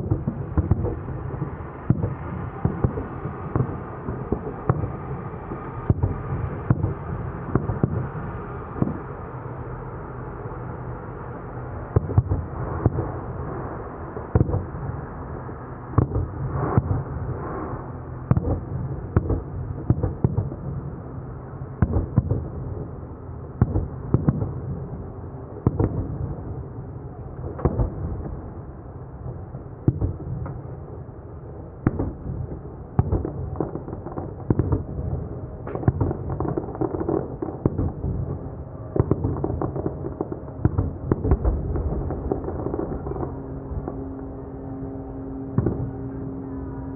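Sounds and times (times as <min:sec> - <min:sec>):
fireworks bursting: 0:00.0 - 0:09.8, 0:16.0 - 0:20.7, 0:31.8 - 0:44.1.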